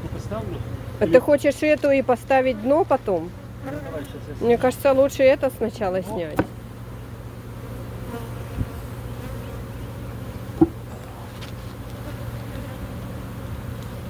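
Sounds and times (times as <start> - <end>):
honey bees buzzing: 0.0 - 14.0
brief knocks: 10.6 - 10.9.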